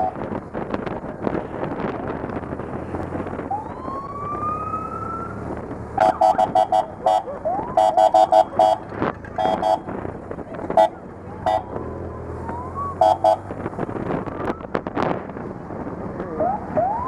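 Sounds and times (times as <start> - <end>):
motorcycle engines rumbling: 0.0 - 17.0
police siren wailing: 3.3 - 9.9, 10.7 - 13.5, 14.2 - 14.8, 16.3 - 17.0
siren chirp: 6.0 - 8.8
short sharp horn blasts: 6.0 - 9.9, 10.7 - 11.8, 13.0 - 13.5.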